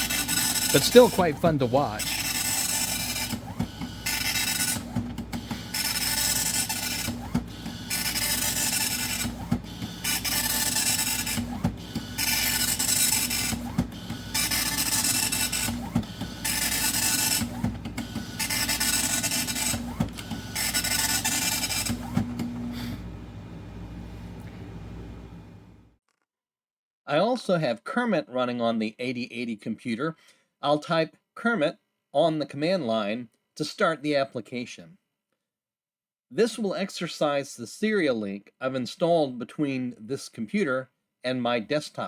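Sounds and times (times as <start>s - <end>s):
dot-matrix printer printing: 0.0s - 22.7s.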